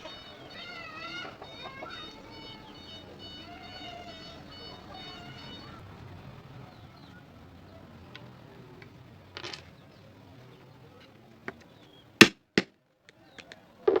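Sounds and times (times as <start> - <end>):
wooden pieces knocking: 9.4 - 9.7.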